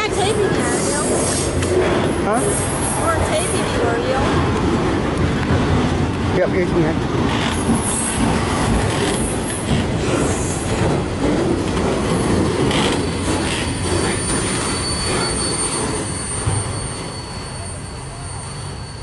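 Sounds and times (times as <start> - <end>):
freight train wheels rumbling: 0.0 - 19.0
high wheel squeal: 12.1 - 19.0.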